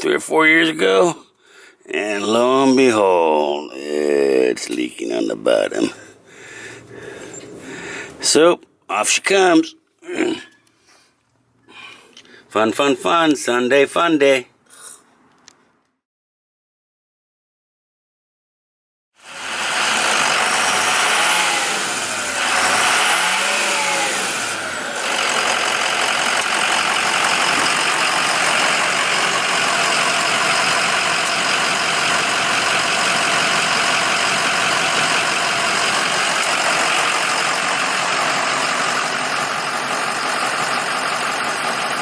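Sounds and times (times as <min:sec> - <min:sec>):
truck engine revving and idling: 0:19.2 - 0:42.0.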